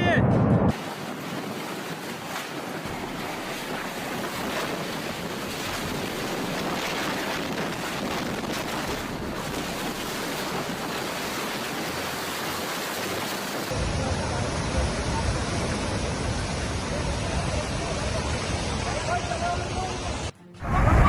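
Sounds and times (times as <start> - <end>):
wind buffeting microphone: 0.0 - 13.8
strong storm wind blowing: 0.0 - 15.5.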